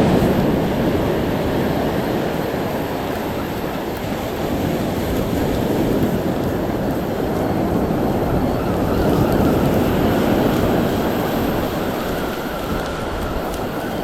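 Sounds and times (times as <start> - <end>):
ocean surf breaking: 0.0 - 14.0.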